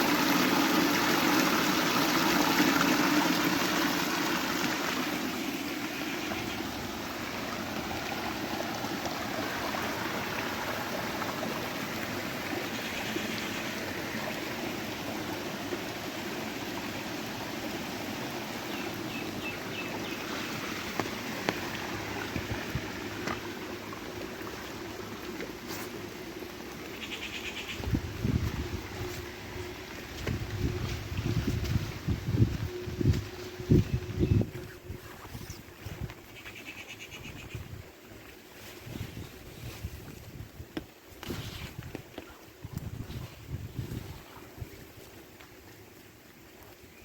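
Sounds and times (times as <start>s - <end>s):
river water flowing: 0.0s - 33.7s.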